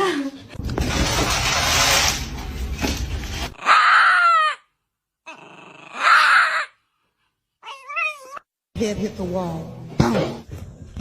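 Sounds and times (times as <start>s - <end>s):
dog crying: 3.6s - 4.7s, 5.3s - 6.8s, 7.6s - 8.4s.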